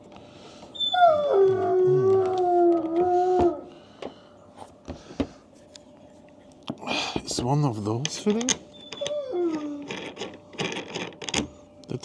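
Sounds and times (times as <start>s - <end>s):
dog howling: 0.8s - 3.8s, 8.7s - 10.0s.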